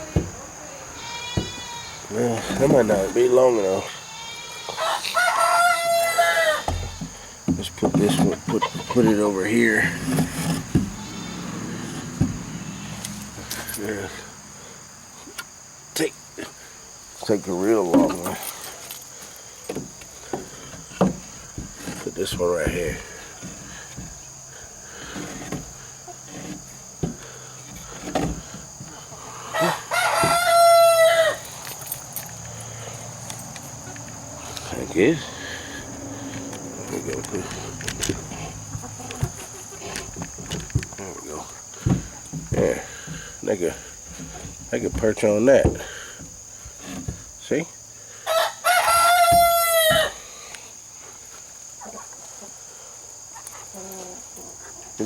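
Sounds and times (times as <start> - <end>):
crickets chirping: 0.0 - 55.0
high insect drone: 0.0 - 55.0
rooster crowing: 4.6 - 6.9, 29.4 - 31.6, 48.2 - 50.2.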